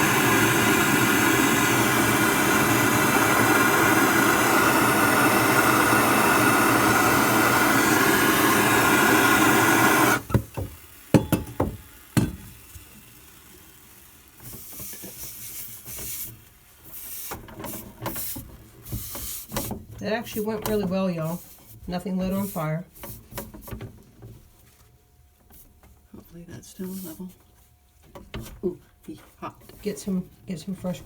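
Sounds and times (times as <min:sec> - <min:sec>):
torch flame hissing: 0:00.0 - 0:10.3.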